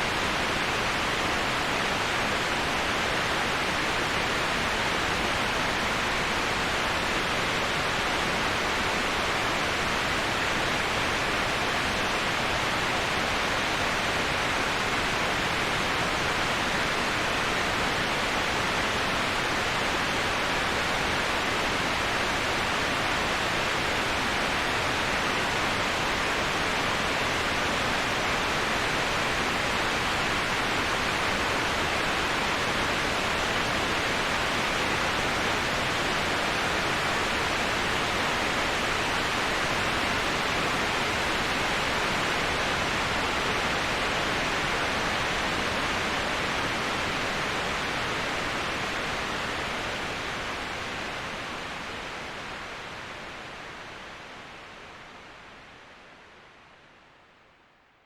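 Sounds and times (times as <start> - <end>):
waterfall rushing: 0.0 - 53.1.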